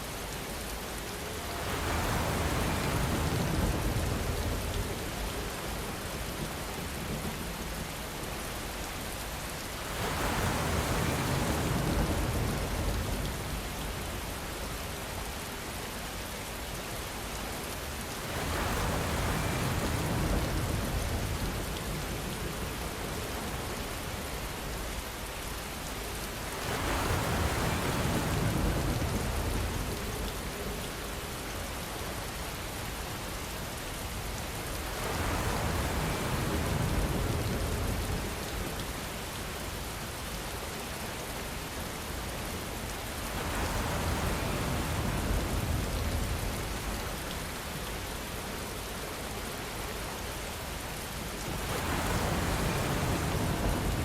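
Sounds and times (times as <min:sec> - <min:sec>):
steady rainfall hiss: 0:00.0 - 0:54.0.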